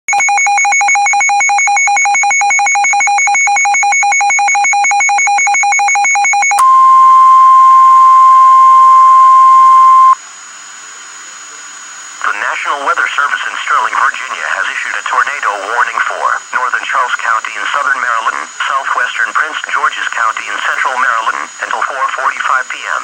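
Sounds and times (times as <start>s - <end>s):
steady high alert tone: 0.1s - 10.2s.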